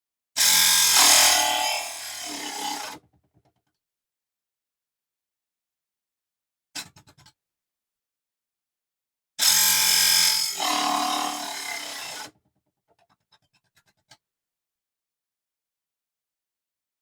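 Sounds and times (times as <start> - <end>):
table saw motor whining: 0.4 - 3.0, 9.4 - 12.3.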